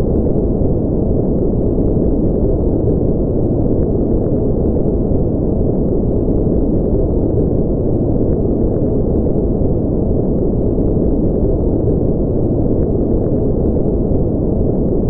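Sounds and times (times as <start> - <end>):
deep rumbling noise: 0.0 - 15.0.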